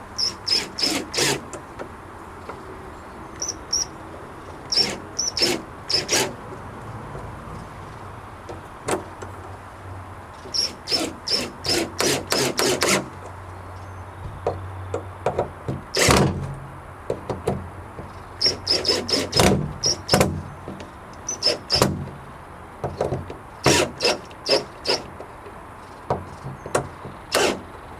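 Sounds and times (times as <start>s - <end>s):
tool clicks and knocks: 14.2s - 22.2s, 22.8s - 27.8s.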